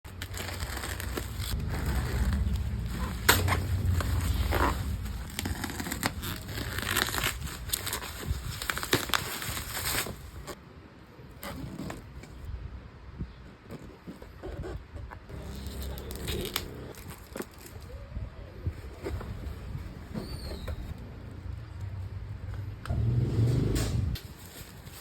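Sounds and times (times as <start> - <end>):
low handling rumble: 0.1 - 8.6, 15.2 - 24.2
packaging crinkling and tearing: 0.1 - 10.6, 15.3 - 18.0.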